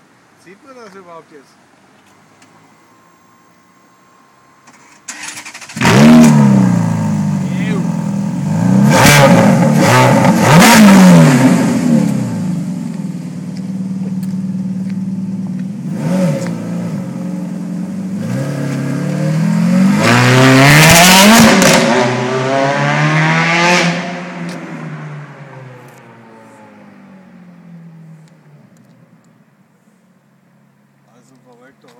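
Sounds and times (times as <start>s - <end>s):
car engine revving: 4.7s - 28.0s.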